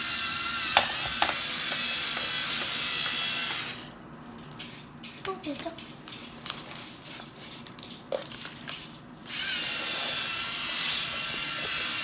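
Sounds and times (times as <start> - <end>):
robot vacuum motor hissing: 9.3 - 12.0.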